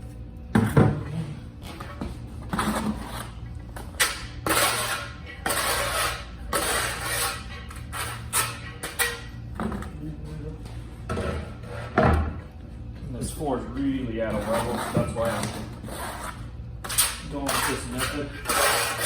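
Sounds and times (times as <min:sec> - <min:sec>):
trowel scraping mortar on tiles: 0:04.0 - 0:09.3, 0:14.3 - 0:19.0.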